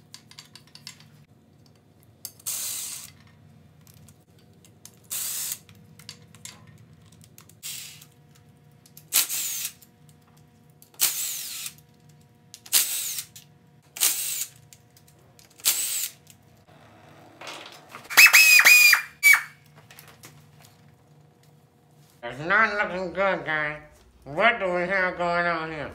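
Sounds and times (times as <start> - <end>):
power tool whirring: 11.0 - 11.8, 14.0 - 14.6, 15.6 - 19.5.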